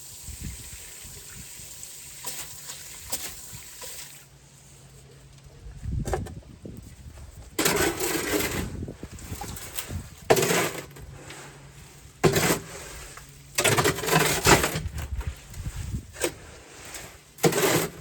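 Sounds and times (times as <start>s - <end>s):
tool scraping wet concrete: 7.5s - 18.0s.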